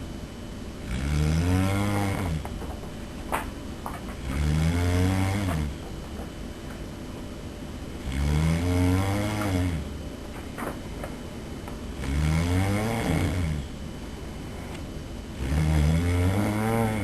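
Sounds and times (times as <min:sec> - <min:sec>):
man snoring: 0:00.8 - 0:02.5, 0:04.2 - 0:05.8, 0:08.0 - 0:10.0, 0:12.0 - 0:13.8, 0:15.3 - 0:17.0.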